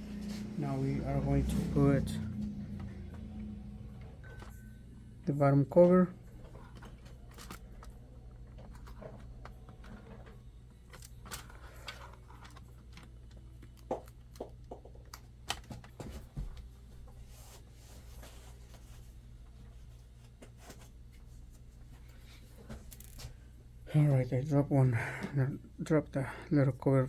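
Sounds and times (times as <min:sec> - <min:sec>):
steady low hum: 0:00.0 - 0:14.5
plastic parts clicking and tapping: 0:06.4 - 0:16.0.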